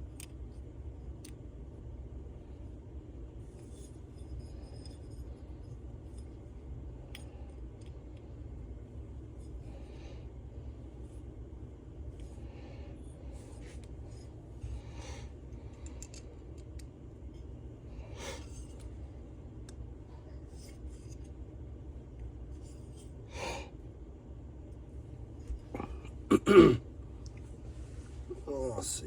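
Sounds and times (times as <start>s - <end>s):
steady low hum: 0.0s - 29.0s
tools scraping and clicking: 15.7s - 16.9s.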